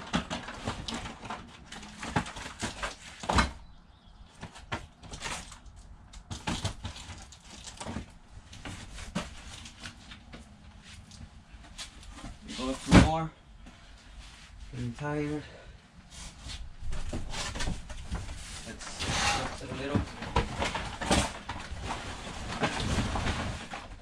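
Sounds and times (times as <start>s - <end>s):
boxes knocking and clattering: 0.0s - 3.7s, 4.3s - 10.4s, 16.8s - 24.0s.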